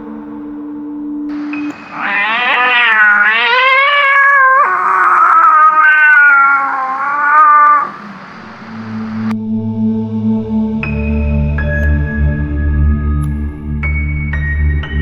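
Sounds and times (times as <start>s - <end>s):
ghostly wavering wail: 1.9s - 8.2s.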